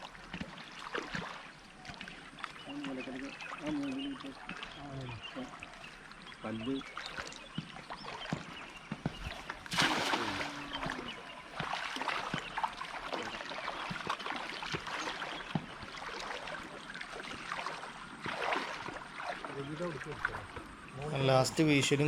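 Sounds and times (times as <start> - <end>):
water splashing and trickling: 0.0 - 22.0
cast net splashing into water: 9.1 - 20.4.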